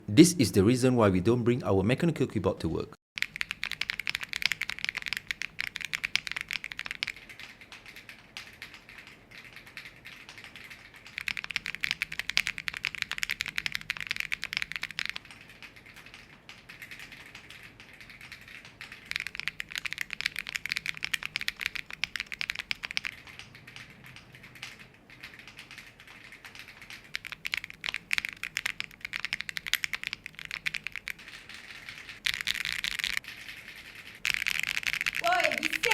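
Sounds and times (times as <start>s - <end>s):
mechanical keyboard typing: 3.2s - 35.9s.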